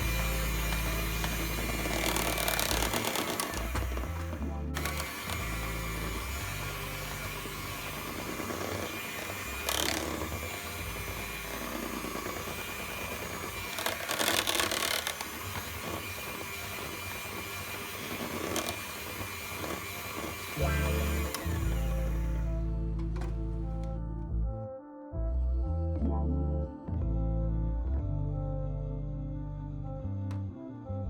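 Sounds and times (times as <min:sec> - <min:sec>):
electric hand beater whipping cream: 0:00.0 - 0:23.4.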